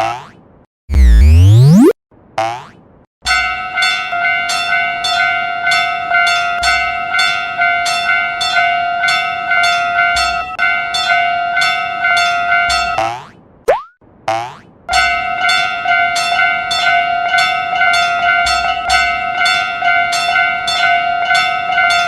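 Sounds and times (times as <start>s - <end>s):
rising cartoon glide: 0.9s - 2.0s
railroad crossing warning bell: 3.3s - 13.0s, 14.9s - 22.0s.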